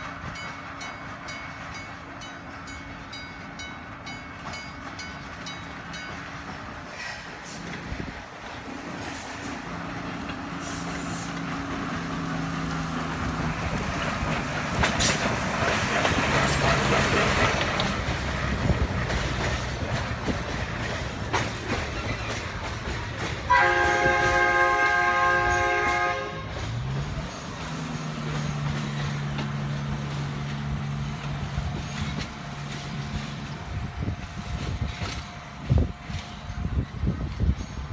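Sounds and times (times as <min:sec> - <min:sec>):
diesel locomotive engine: 0:00.0 - 0:37.9
rail and wheel clatter: 0:00.0 - 0:37.9
locomotive horn blast: 0:23.5 - 0:26.6.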